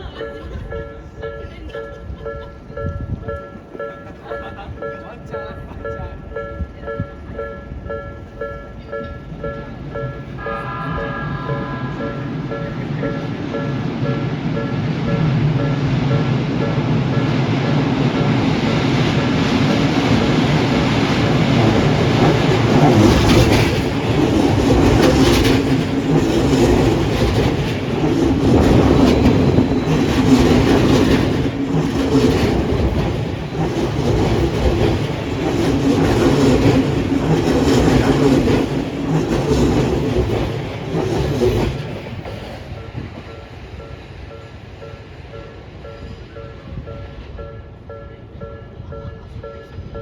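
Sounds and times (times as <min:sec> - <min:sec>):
train low rumbling hum: 0:00.0 - 0:50.0
train wheels clacking over rail joints: 0:09.2 - 0:44.0.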